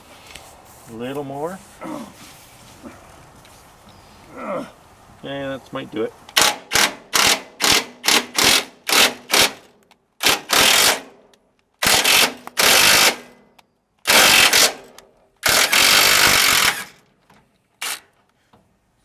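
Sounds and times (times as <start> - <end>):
pneumatic air tool on sheet metal: 15.4 - 17.0.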